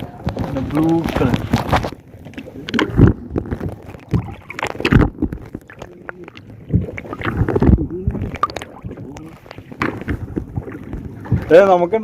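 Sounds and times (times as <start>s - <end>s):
water slapping against boat hull: 0.0s - 12.0s.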